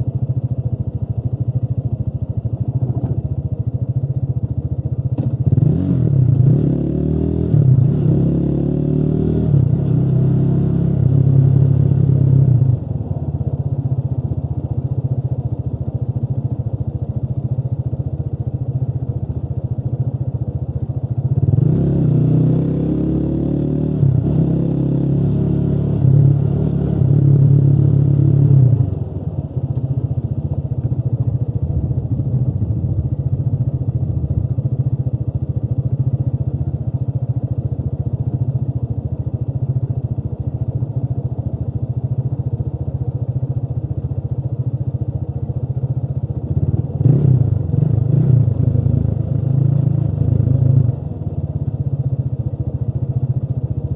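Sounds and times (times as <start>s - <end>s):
motorcycle engine accelerating: 5.1s - 15.5s, 20.6s - 40.0s, 44.7s - 52.7s.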